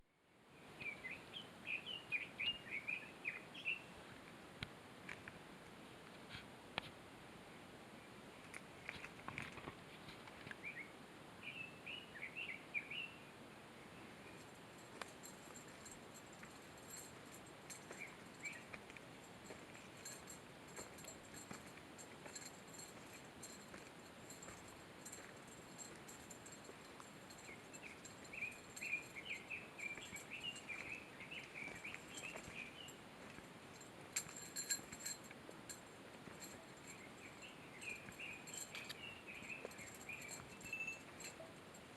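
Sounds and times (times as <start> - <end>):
songbird singing: 0.5 - 4.0, 10.4 - 41.9
songbird whistling: 0.8 - 3.8, 27.4 - 33.0
footsteps on a trail: 14.4 - 41.4.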